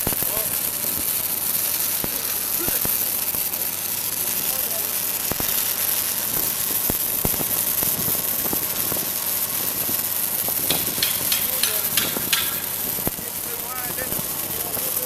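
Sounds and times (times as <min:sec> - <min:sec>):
welding arc crackling hiss: 0:00.0 - 0:15.0
small pops and clicks: 0:10.6 - 0:13.2.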